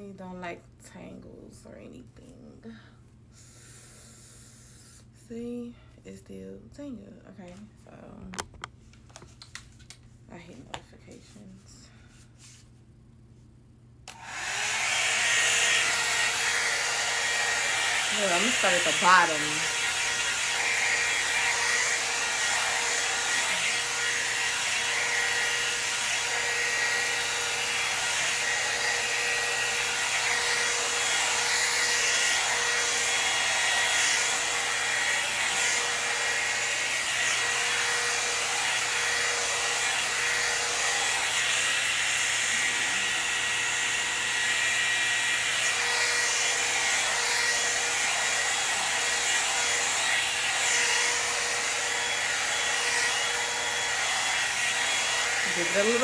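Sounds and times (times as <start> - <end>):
blow dryer brush running: 14.1 - 56.0.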